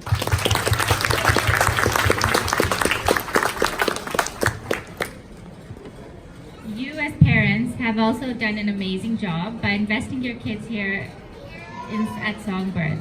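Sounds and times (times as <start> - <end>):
audience applauding: 0.0 - 5.3.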